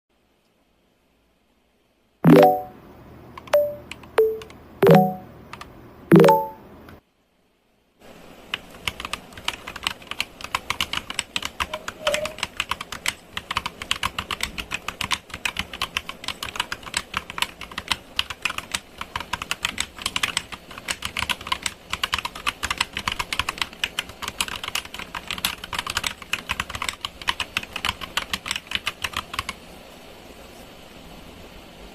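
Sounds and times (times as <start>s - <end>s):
mechanical keyboard typing: 3.4s - 6.6s, 8.5s - 29.6s.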